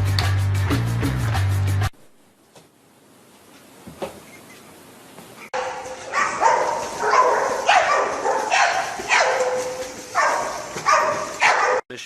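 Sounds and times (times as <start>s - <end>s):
dog barking: 5.4s - 11.8s.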